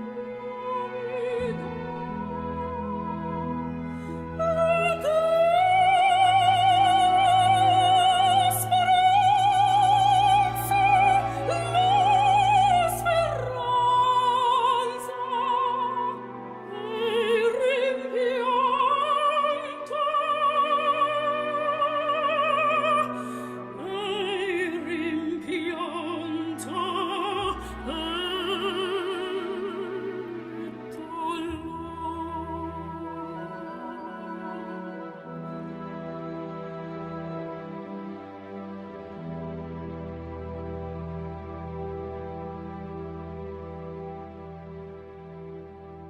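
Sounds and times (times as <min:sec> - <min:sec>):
high voice singing opera: 0:00.0 - 0:34.8
orchestral accompaniment: 0:00.0 - 0:46.0.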